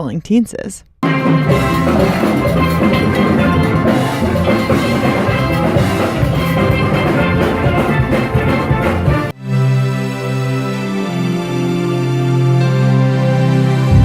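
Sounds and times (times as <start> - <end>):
music with drums: 1.0 - 9.4.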